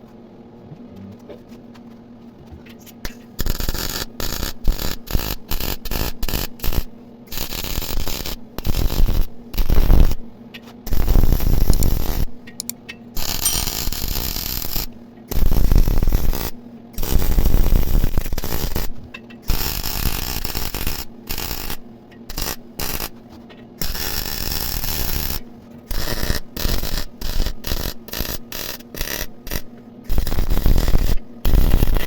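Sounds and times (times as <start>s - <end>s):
welder low hum: 3.4s - 10.2s, 10.9s - 18.9s, 23.8s - 32.0s
welding arc crackling: 3.4s - 10.2s, 10.9s - 18.9s, 19.5s - 23.1s, 23.8s - 32.0s.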